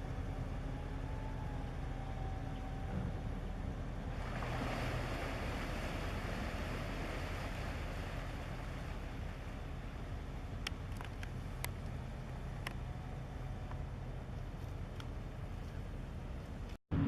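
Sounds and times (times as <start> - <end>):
ship engine drone: 0.0 - 17.0
rushing water: 4.0 - 14.3.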